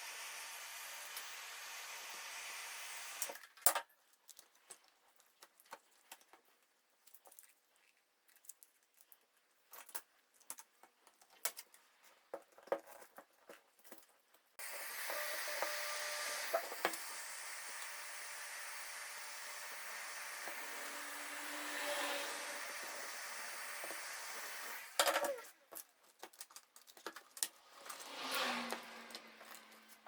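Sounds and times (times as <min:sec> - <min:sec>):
heat gun blowing: 0:00.0 - 0:03.4, 0:14.6 - 0:25.5.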